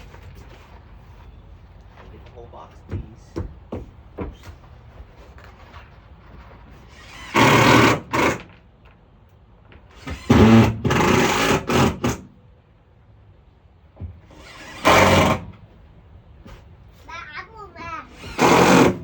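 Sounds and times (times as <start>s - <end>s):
power drill driving screws: 6.8s - 8.5s, 9.9s - 12.3s, 14.3s - 15.6s, 18.1s - 19.0s.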